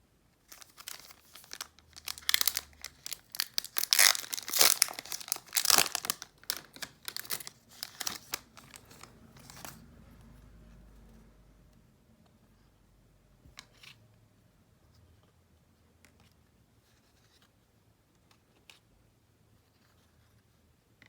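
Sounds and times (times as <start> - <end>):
foil pack crackling: 0.5 - 9.7.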